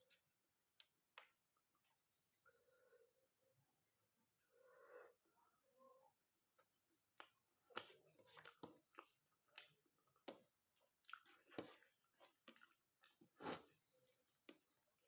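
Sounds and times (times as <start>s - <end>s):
chewing and wet mouth smacks: 6.6s - 14.8s.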